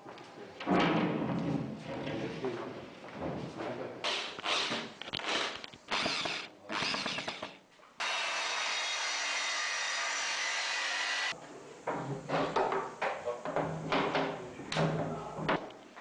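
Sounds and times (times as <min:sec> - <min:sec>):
power tool motor bursts: 0:04.1 - 0:11.3.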